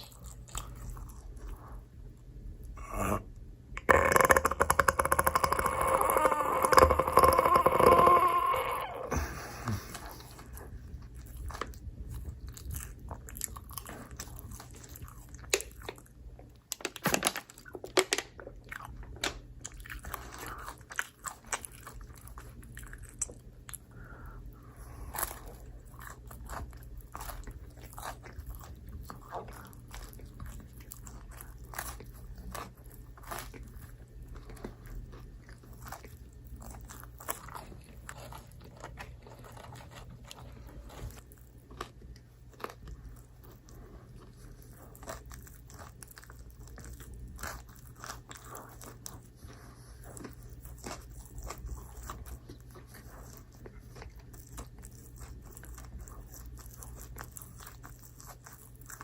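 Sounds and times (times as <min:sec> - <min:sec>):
steady low hum: 0:00.0 - 0:16.7
chewing and crunching pizza: 0:00.0 - 0:59.0.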